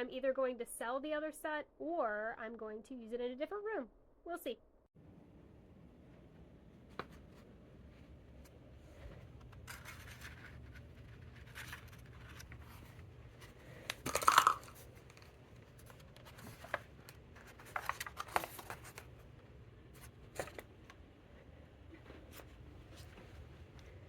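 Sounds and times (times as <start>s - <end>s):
rustling and handling: 6.0s - 24.0s.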